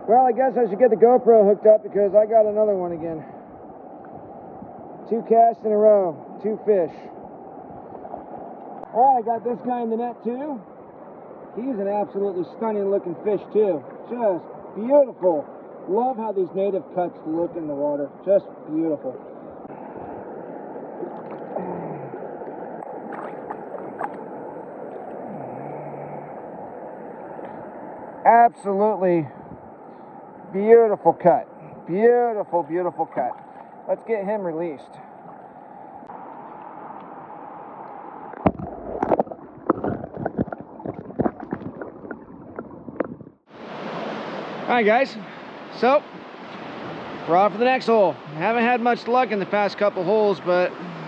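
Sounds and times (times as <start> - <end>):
water splashing: 5.9 - 51.0
river current rushing: 7.2 - 42.4, 43.5 - 51.0
river water rushing: 19.6 - 29.3, 43.5 - 51.0.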